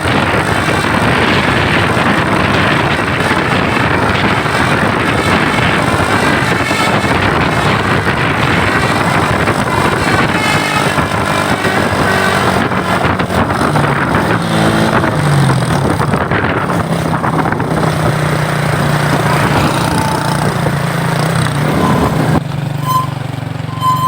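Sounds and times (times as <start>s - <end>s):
low engine hum: 0.0s - 24.0s
road noise: 0.0s - 24.0s
vehicle engine running: 0.0s - 24.0s.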